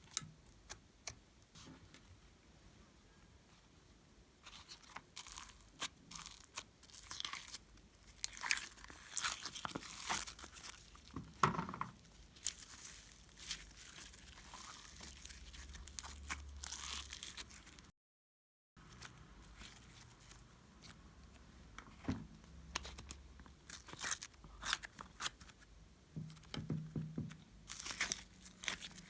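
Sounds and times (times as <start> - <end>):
hands squishing slime: 4.5 - 11.2, 12.1 - 17.9.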